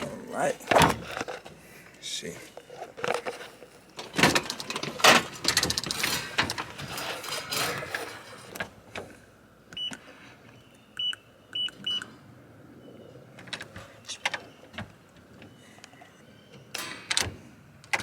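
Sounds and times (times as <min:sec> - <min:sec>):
handling clicks and rattles: 0:02.6 - 0:09.2
keypad door lock beeps: 0:09.8 - 0:10.0, 0:11.0 - 0:12.1.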